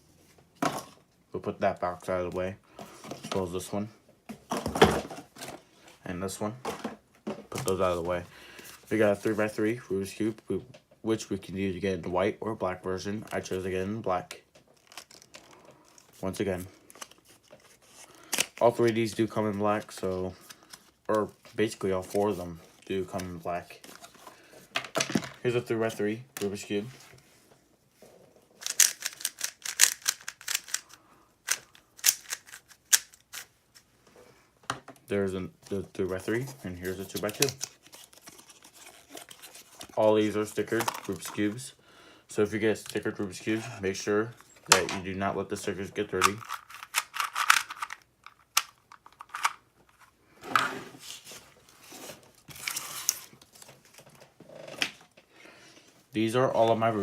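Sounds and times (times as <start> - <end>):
packaging clicking and rustling: 14.7 - 16.2, 28.6 - 33.5, 36.3 - 40.0, 46.2 - 50.1
packaging rustling and crinkling: 36.2 - 41.6, 51.0 - 54.3.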